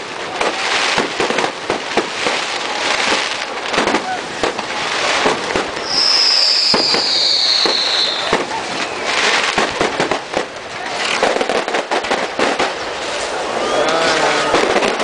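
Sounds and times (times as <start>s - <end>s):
firework crackling and pops: 0.0s - 15.0s
firework whistle: 5.8s - 9.6s.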